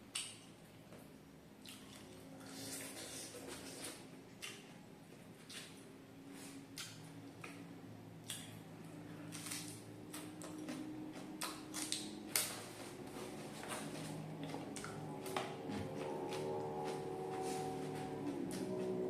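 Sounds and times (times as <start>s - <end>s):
crispy food crunching: 8.2s - 18.9s.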